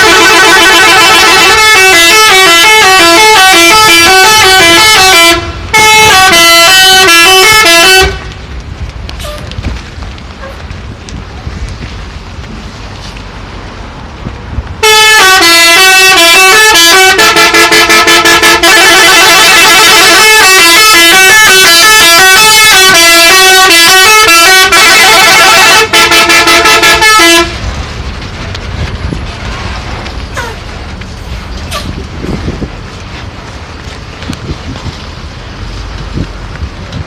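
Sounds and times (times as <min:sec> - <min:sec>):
multi-tone musical bus horn: 0:00.0 - 0:08.3, 0:14.8 - 0:27.6.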